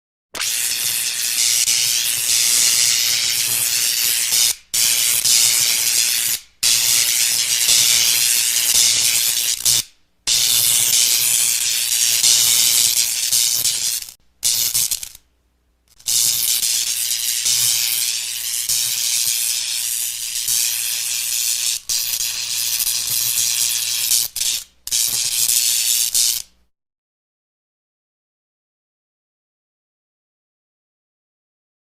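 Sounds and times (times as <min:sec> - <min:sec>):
hissing electric buzz: 0:00.4 - 0:15.2, 0:15.9 - 0:26.5.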